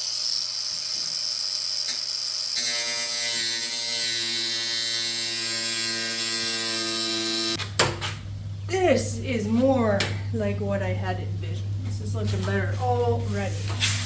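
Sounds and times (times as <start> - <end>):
angle grinder whining: 0.0 - 7.6
grinder cutting sheet metal: 0.0 - 7.6.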